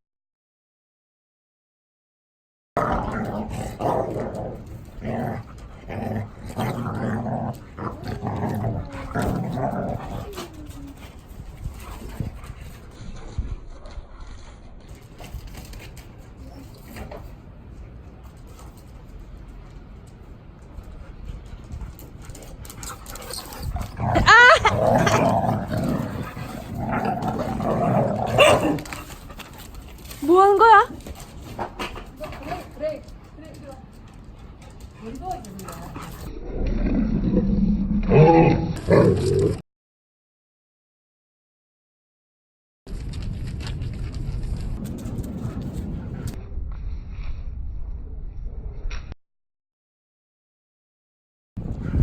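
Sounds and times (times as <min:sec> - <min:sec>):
dog growling: 0:02.8 - 0:11.1, 0:23.2 - 0:29.2, 0:35.6 - 0:39.6
dog whining: 0:23.6 - 0:25.2.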